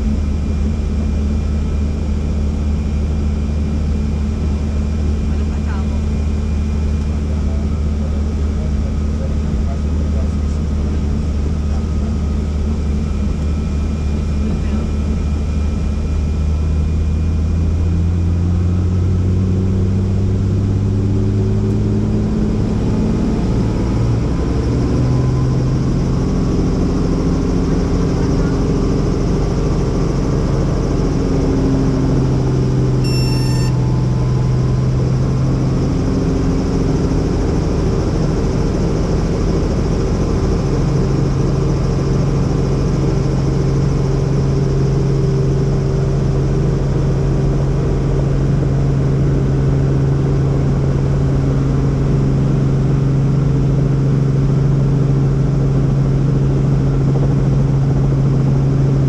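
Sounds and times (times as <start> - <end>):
helicopter engine and rotor drone: 0.0 - 59.0
high-pitched tone: 33.0 - 34.0.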